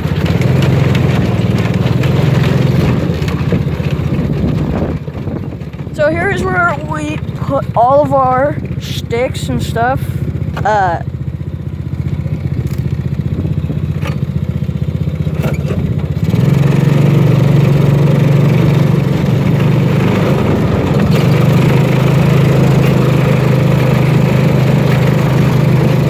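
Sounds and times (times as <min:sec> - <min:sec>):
small engine running: 0:11.2 - 0:26.0.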